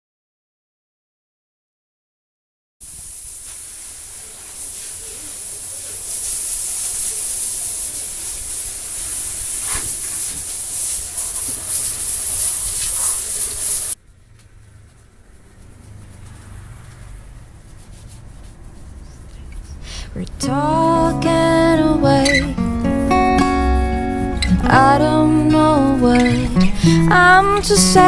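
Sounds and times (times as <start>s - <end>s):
compressed air jet hissing: 2.8s - 14.0s, 23.5s - 28.0s.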